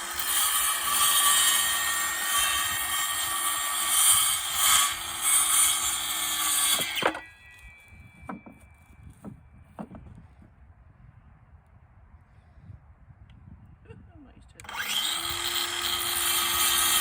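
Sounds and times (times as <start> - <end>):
power tool whining on wood: 0.0 - 9.3, 14.6 - 17.0.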